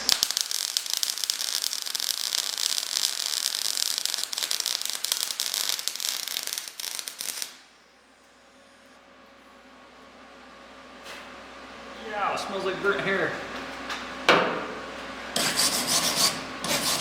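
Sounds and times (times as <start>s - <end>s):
welder arc crackling: 0.0s - 7.7s.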